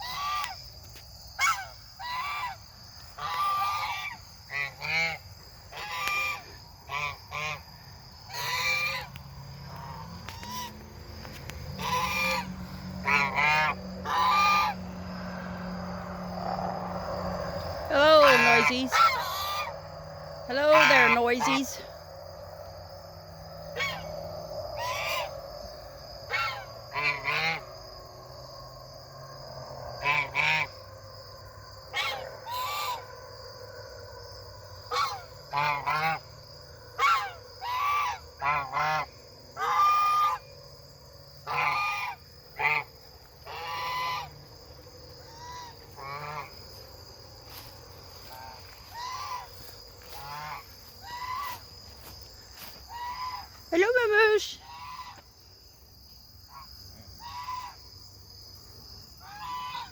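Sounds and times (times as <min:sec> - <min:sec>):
geese honking: 0:00.0 - 0:00.6, 0:01.4 - 0:16.2, 0:17.4 - 0:19.9, 0:20.5 - 0:21.9, 0:23.8 - 0:24.1, 0:24.8 - 0:25.4, 0:26.3 - 0:27.7, 0:30.0 - 0:30.7, 0:31.9 - 0:33.1, 0:34.9 - 0:36.3, 0:37.0 - 0:40.5, 0:41.4 - 0:46.9, 0:47.5 - 0:55.2, 0:57.2 - 0:57.8, 0:59.2 - 0:59.9.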